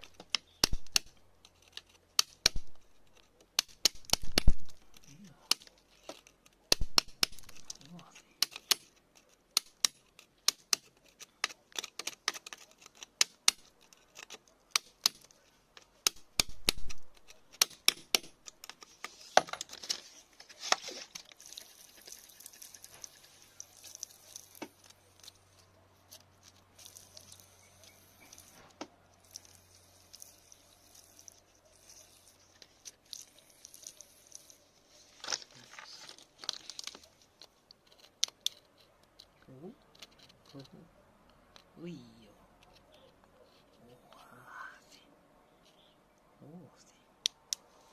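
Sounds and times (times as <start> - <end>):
sharp clicks and knocks of rocks: 0.0 - 40.8
rock scraping and crumbling: 15.1 - 39.3.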